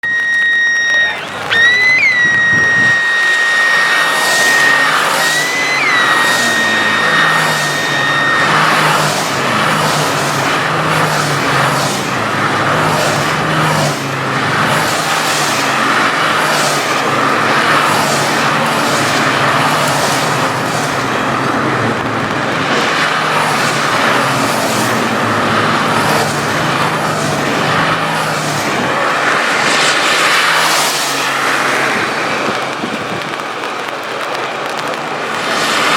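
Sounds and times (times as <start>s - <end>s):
steady high tone: 0.0s - 11.2s
race car engine running hard: 0.2s - 35.9s.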